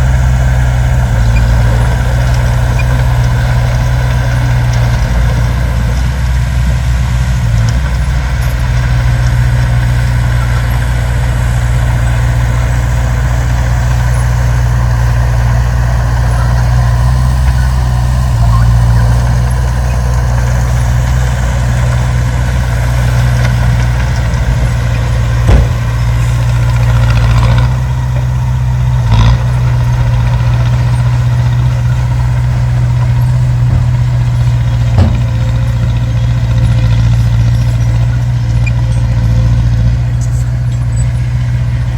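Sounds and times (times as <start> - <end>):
heavy diesel engine droning: 0.0 - 41.9
sharp metallic knocks: 25.4 - 26.2, 33.0 - 37.2.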